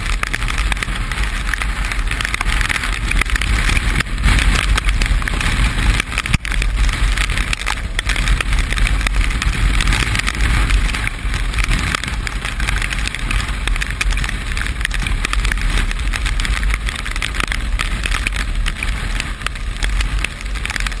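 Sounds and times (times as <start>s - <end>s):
vehicle road noise: 0.0s - 21.0s
wind rumble on microphone: 0.0s - 21.0s
wind rush: 0.0s - 21.0s.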